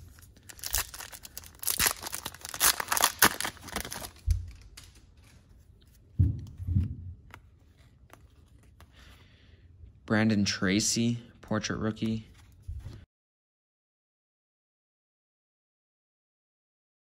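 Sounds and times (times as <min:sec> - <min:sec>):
foil wrapper tearing and crinkling: 0:00.0 - 0:05.0
soft low bumps: 0:06.1 - 0:07.3.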